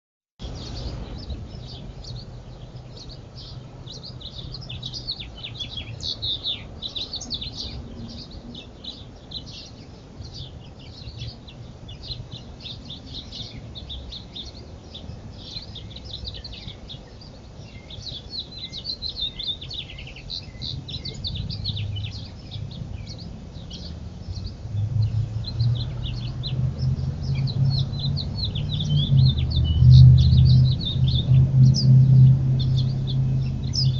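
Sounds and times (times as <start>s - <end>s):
small birds chirping: 0.4s - 33.9s
low rumble: 20.7s - 33.9s.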